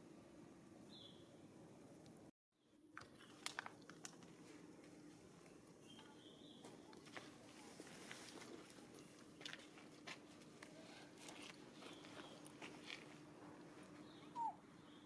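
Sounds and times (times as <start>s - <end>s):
faint clicks and crackles: 2.9s - 13.1s.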